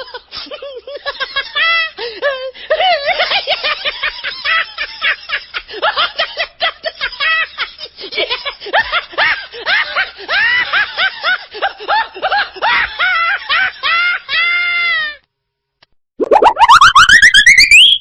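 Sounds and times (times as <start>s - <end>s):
high-pitched rapid laughing: 16.2s - 18.0s.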